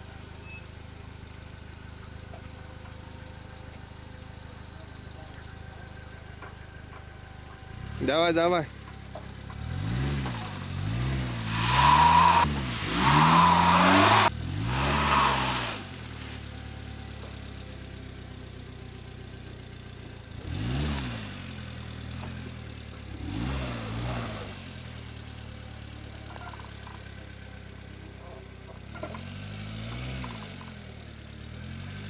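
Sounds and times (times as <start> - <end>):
car engine revving: 0.0 - 19.4, 20.2 - 32.0
bursts of rushing noise: 11.2 - 14.3.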